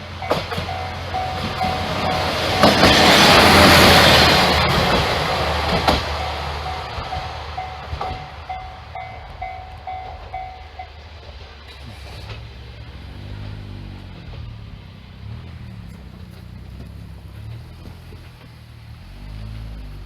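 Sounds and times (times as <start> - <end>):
crossing warning bell: 0.0 - 12.0
rumble of passing train: 0.0 - 20.0.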